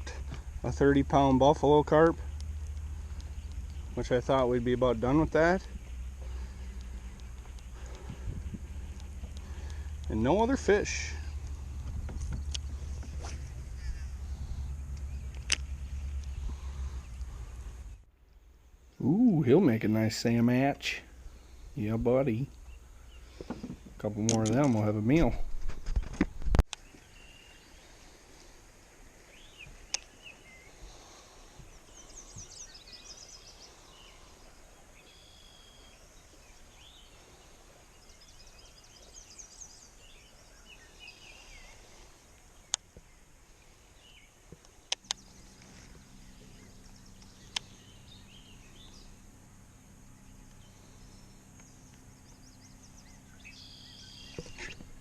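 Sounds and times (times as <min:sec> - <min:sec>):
small birds singing: 0:00.0 - 0:25.8, 0:26.7 - 0:55.0
steady low hum: 0:00.0 - 0:55.0
sharp clicks: 0:44.6 - 0:45.2, 0:47.2 - 0:47.8.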